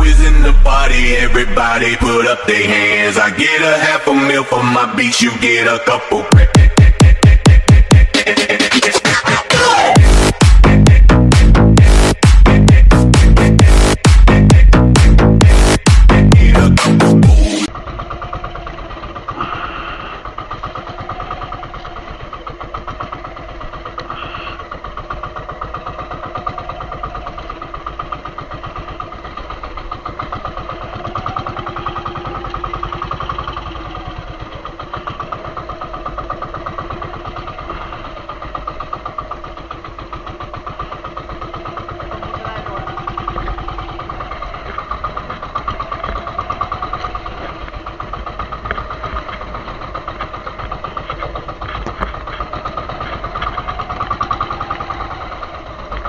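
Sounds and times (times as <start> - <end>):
boat engine chugging: 0.0 - 56.0.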